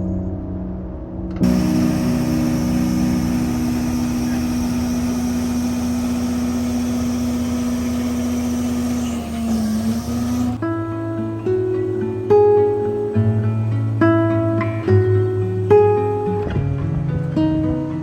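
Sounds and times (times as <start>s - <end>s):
engine running steadily: 1.4s - 10.6s
hiss: 1.4s - 10.6s.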